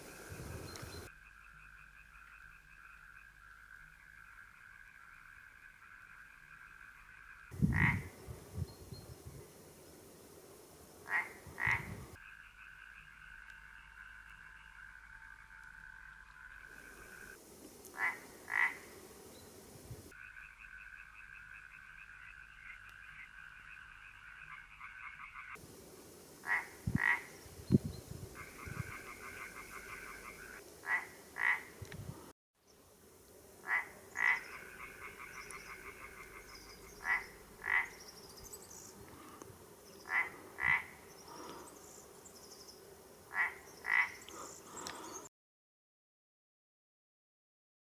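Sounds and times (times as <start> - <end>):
frogs croaking: 0.0 - 8.2, 11.0 - 18.9, 20.1 - 25.6, 26.4 - 27.5, 28.3 - 31.9, 33.6 - 42.1, 43.3 - 45.3
trilling frog chorus: 1.0 - 8.1, 11.1 - 17.4, 18.0 - 18.9, 20.1 - 25.6, 26.4 - 27.4, 28.4 - 31.7, 33.6 - 38.0, 40.0 - 41.6, 43.3 - 45.2.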